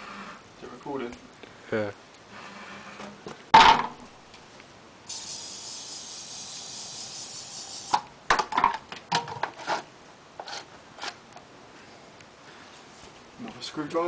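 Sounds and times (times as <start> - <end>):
loud thump: 3.5 - 4.0
aerosol can hissing: 5.1 - 8.0.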